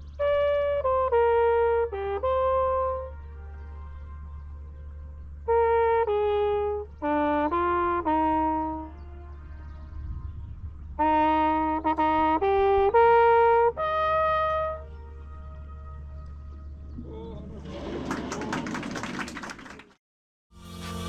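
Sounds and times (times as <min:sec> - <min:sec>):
solo brass horn: 0:00.0 - 0:16.9.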